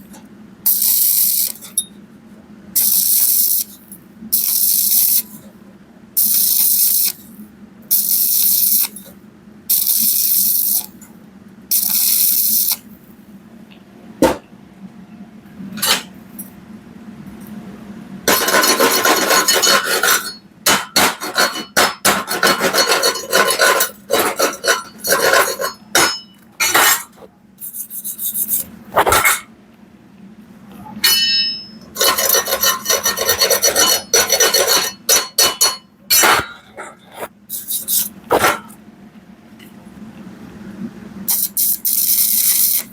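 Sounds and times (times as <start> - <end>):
welding arc crackling: 0.7 - 1.7, 2.8 - 3.8, 4.4 - 5.4, 6.2 - 7.3, 7.9 - 9.0, 9.7 - 11.0, 11.7 - 12.9, 41.3 - 42.9
low steady hum: 3.5 - 41.4.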